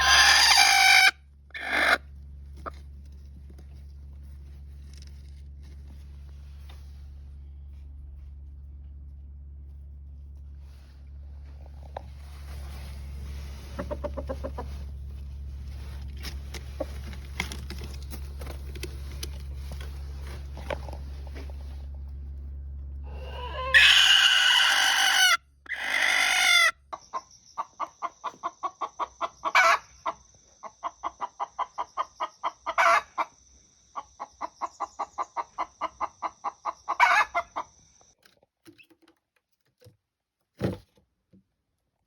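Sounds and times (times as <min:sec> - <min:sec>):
chicken clucking: 0:00.0 - 0:02.8, 0:13.6 - 0:15.0, 0:23.0 - 0:37.9
chicken squawking: 0:00.0 - 0:02.8, 0:23.0 - 0:26.8.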